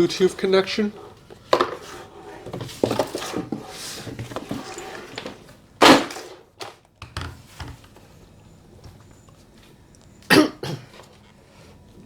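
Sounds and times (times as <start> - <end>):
packaging rustling and knocking: 1.4 - 6.8.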